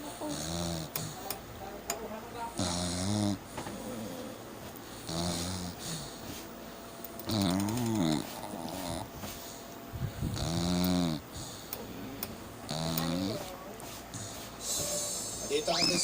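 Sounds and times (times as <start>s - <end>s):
snoring: 0.2s - 1.2s, 2.6s - 4.4s, 5.0s - 6.1s, 7.2s - 9.1s, 10.3s - 11.6s, 12.7s - 13.4s.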